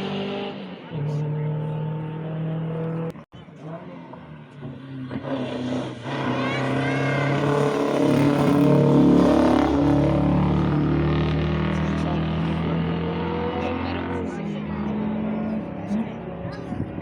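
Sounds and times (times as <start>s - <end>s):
rally car engine passing: 0.0s - 17.0s.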